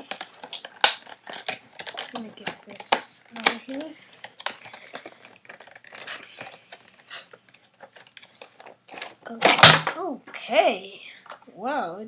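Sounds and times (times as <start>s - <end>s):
cube clattering: 0.0s - 6.9s, 7.8s - 10.0s
plastic packaging clicks and rustles: 0.0s - 10.0s.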